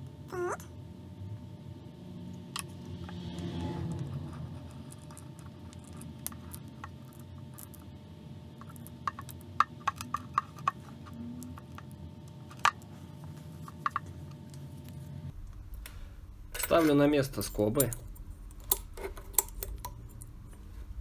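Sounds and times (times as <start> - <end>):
steady low hum: 0.0 - 21.0
metal parts and tools clicking: 16.5 - 20.3.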